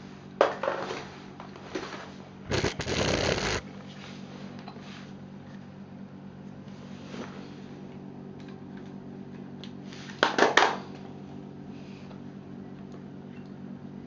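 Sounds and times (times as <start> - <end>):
steady low hum: 1.0 - 10.2.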